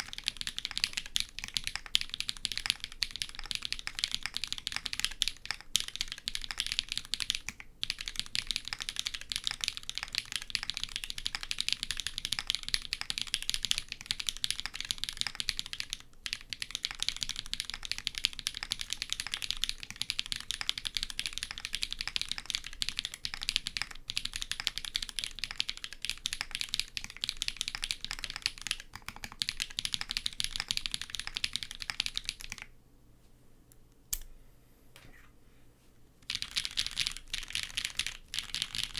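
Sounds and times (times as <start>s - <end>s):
fast mechanical keyboard typing: 0.0s - 32.7s, 36.2s - 38.9s.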